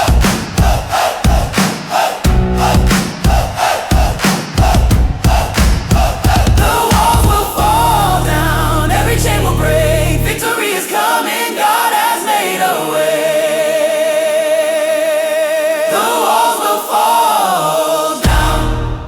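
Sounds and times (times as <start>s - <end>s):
choir singing gospel song: 0.0s - 19.0s
low bass and beat: 2.3s - 3.4s, 4.0s - 10.4s.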